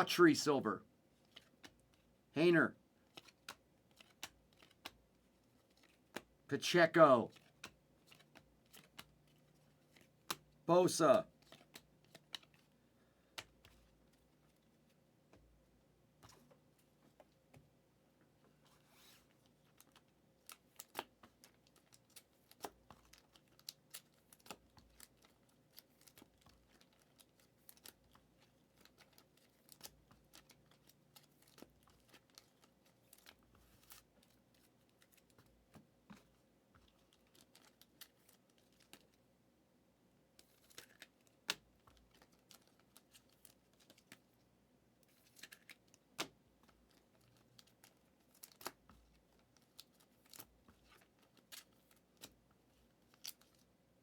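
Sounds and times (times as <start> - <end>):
cards clicking and snapping: 3.1 - 5.0, 7.4 - 10.4, 11.4 - 12.7, 19.7 - 28.0, 45.2 - 48.8.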